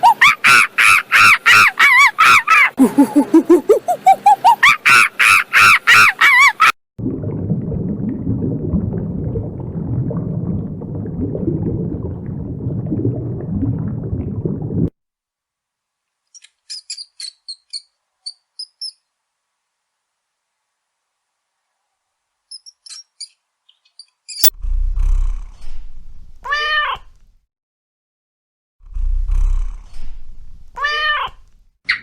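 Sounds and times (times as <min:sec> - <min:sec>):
short high-pitched chirps: 0:22.5 - 0:23.4.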